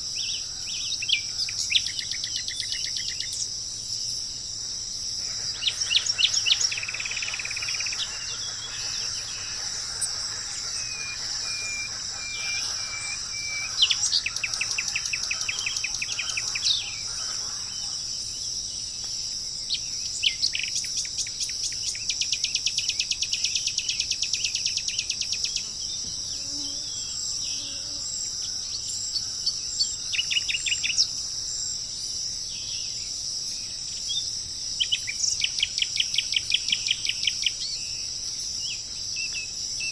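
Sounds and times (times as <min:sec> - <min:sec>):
insect chorus: 0:00.0 - 0:39.9
bird trills: 0:05.2 - 0:18.2.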